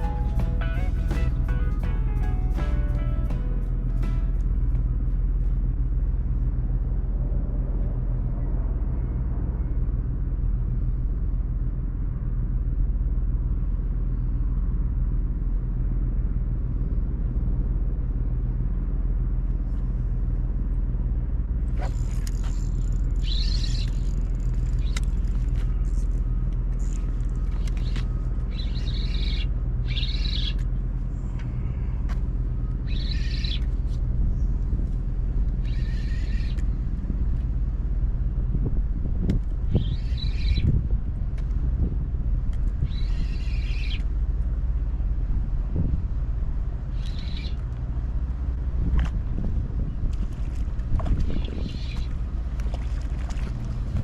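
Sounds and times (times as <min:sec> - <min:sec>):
wind buffeting microphone: 0:36.6 - 0:54.0.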